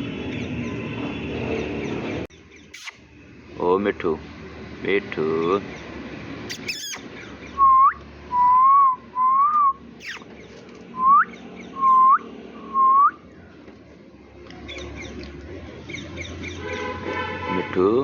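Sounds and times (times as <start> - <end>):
short sharp chirp: 2.7 - 3.0, 6.5 - 7.0, 10.0 - 10.2.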